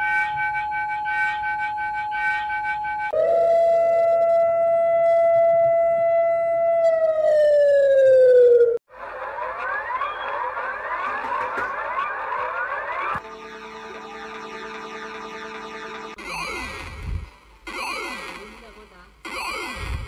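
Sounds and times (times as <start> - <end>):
synthesized alert siren tone: 9.2 - 20.0.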